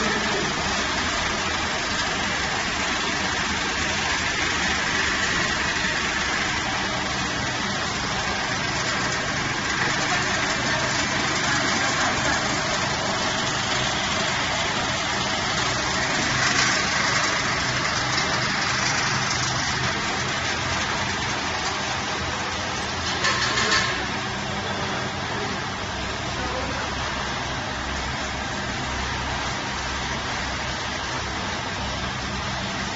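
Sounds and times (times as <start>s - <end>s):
pellet machine droning and grinding: 0.0s - 32.9s.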